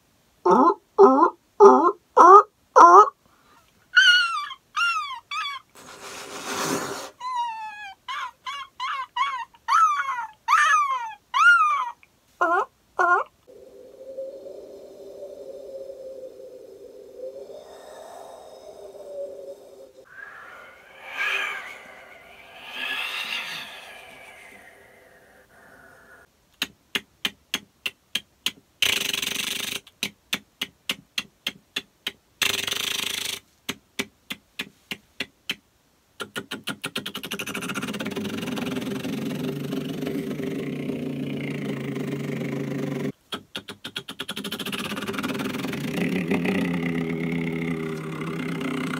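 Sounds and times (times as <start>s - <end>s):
vocal hiss: 5.7s - 7.3s, 13.1s - 35.6s, 36.2s - 48.9s
vocal buzzing drone: 13.5s - 26.2s, 45.6s - 48.9s
person making whistly vocal sound: 14.6s - 25.8s
mouth clicks: 18.5s - 48.9s.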